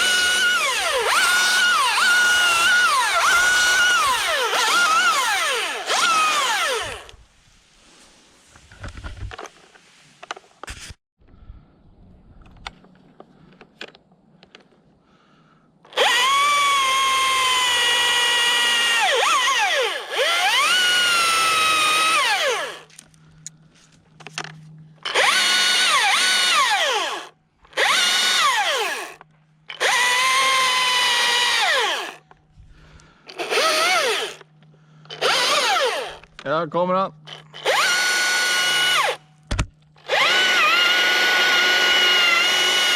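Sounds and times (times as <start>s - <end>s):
electric chainsaw cutting wood: 0.0s - 7.2s, 15.9s - 22.9s, 25.0s - 32.2s, 33.3s - 34.5s, 35.1s - 36.2s, 37.3s - 39.2s, 40.0s - 42.9s.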